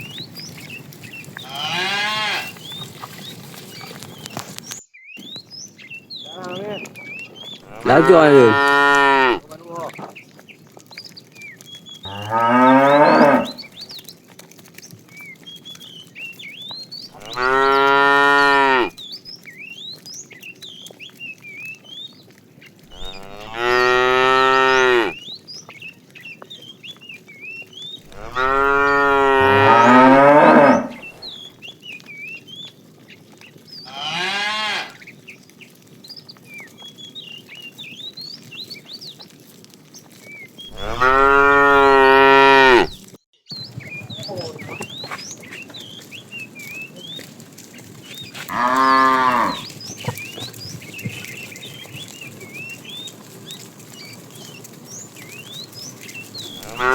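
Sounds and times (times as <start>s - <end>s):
cattle mooing: 1.4s - 2.5s, 7.7s - 9.5s, 12.1s - 13.7s, 17.2s - 18.9s, 22.9s - 25.2s, 28.1s - 31.3s, 33.9s - 35.0s, 40.7s - 43.0s, 48.5s - 49.7s, 56.5s - 56.9s.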